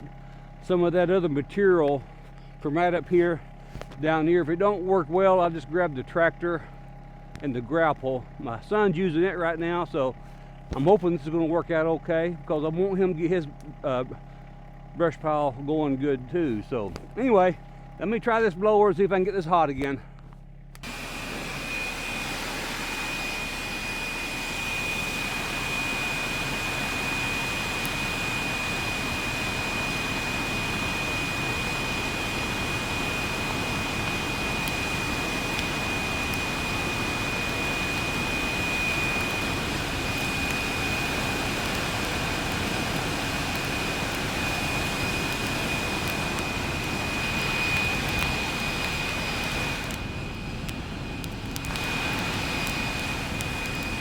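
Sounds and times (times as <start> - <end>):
blower rushing air with whine: 20.6 - 54.0.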